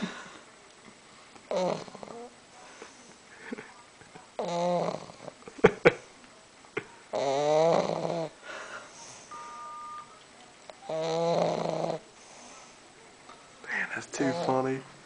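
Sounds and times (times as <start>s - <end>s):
dog snoring: 1.5s - 2.3s, 4.4s - 5.4s, 7.1s - 8.4s, 10.8s - 12.7s, 14.1s - 14.8s.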